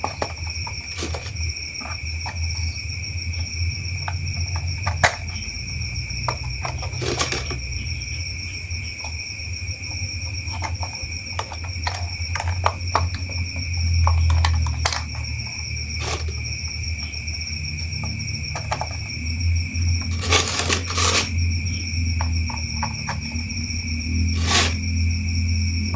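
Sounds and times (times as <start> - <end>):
plastic toy parts clicking: 7.0 - 7.6, 16.0 - 16.4, 20.1 - 21.3, 24.4 - 24.8
high-pitched whine: 12.3 - 25.9.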